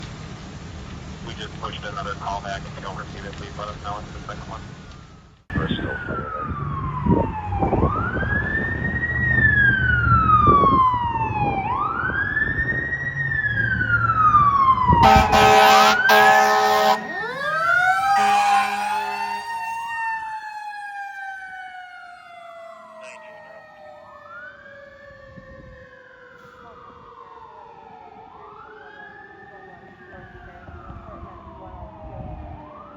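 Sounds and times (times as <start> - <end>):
fire sirens wailing: 2.6 - 32.9
truck engine rumble: 6.1 - 25.7
fire engine air horn blasts: 14.9 - 20.3.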